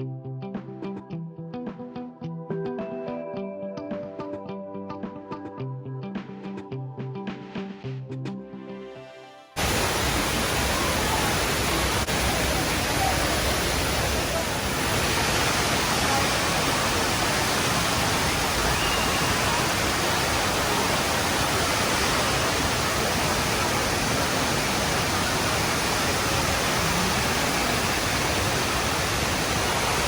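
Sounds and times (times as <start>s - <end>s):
rush of falling water: 9.6s - 30.0s.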